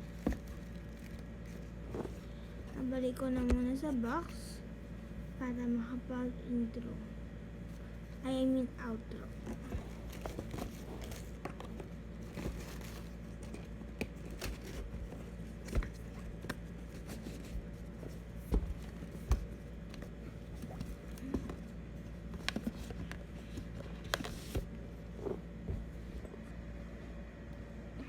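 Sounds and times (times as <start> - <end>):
packaging rustling and crinkling: 0.0 - 2.3, 9.5 - 19.8.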